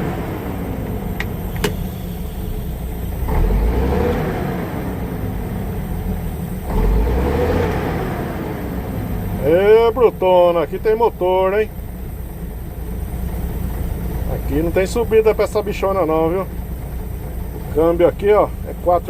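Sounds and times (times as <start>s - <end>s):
truck diesel engine revving: 0.0s - 19.0s
sharp click: 1.2s - 1.9s.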